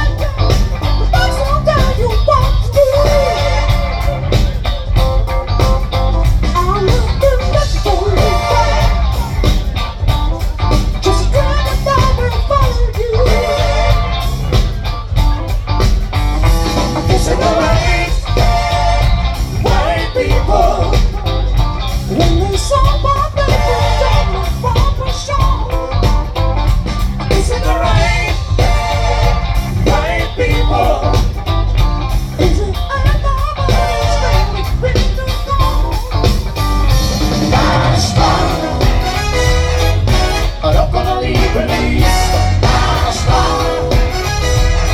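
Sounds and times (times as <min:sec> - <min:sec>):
person singing: 0:00.0 - 0:04.3, 0:06.5 - 0:09.6, 0:11.0 - 0:15.0
heavy bass line: 0:00.0 - 0:44.9
rock guitar: 0:00.0 - 0:44.9.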